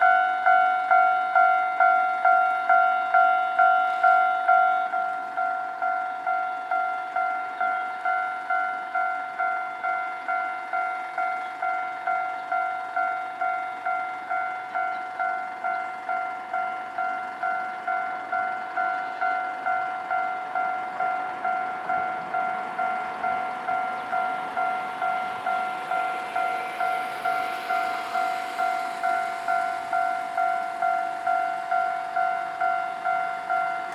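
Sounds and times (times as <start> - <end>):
level crossing warning bell ringing: 0.0 - 33.9.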